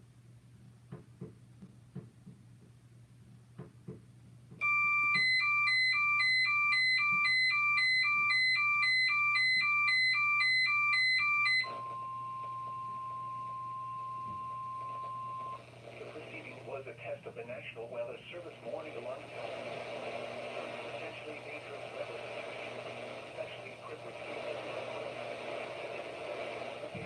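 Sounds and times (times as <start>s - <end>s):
two-tone alert signal: 4.6s - 15.6s
steady alarm tone: 4.6s - 15.7s.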